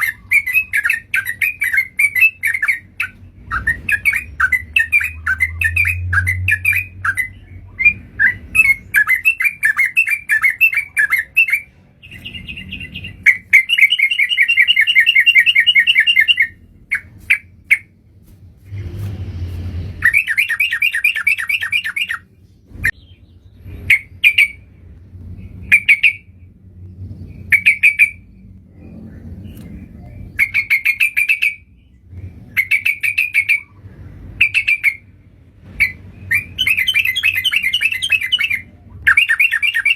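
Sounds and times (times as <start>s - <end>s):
bird song bubbling and chattering: 0.0s - 17.1s.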